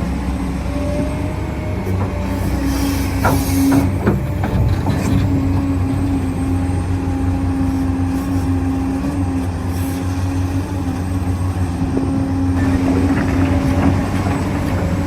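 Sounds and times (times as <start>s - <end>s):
electric motors whining: 0.8s - 15.0s.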